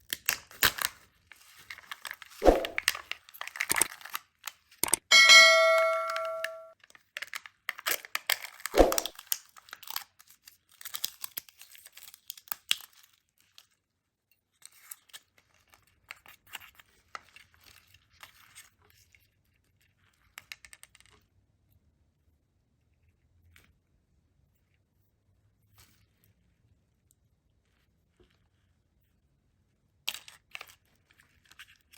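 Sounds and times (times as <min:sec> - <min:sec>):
ringing ding: 0:05.1 - 0:06.7.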